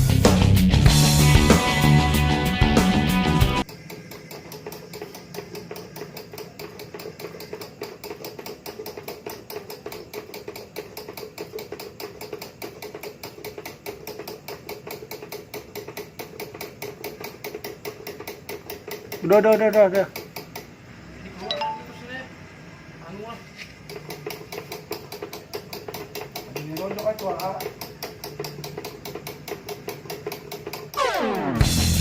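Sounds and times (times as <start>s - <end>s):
small machine ticking: 3.6s - 20.8s, 23.8s - 31.0s.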